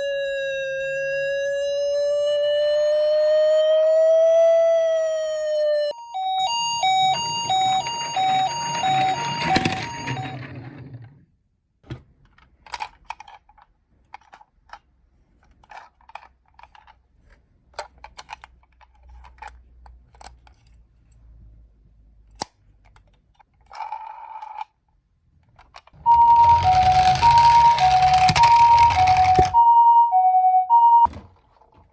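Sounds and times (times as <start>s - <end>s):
two-tone ambulance siren: 0.0s - 10.8s, 26.0s - 31.2s
toy cars clicking and tapping: 12.3s - 17.0s, 17.7s - 20.8s, 22.3s - 24.8s, 25.4s - 29.6s
brief tone: 26.1s - 31.2s.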